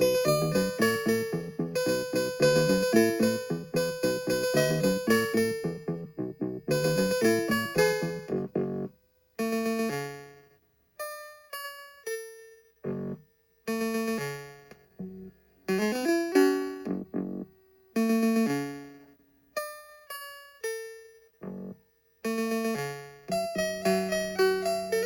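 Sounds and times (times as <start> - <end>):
chiptune music: 0.0 - 8.9, 12.8 - 14.2, 15.0 - 17.5, 21.4 - 25.0.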